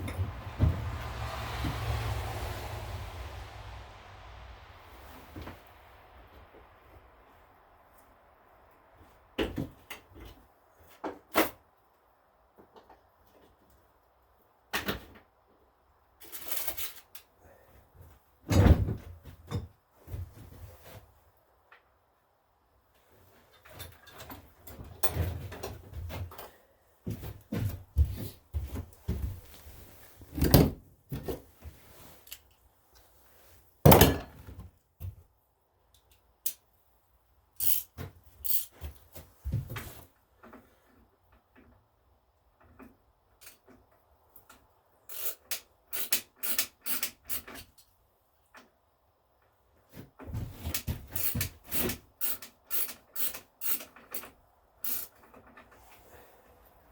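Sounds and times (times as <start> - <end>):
metal parts clunking and clicking: 37.6 - 39.0, 44.4 - 47.9, 50.5 - 55.9.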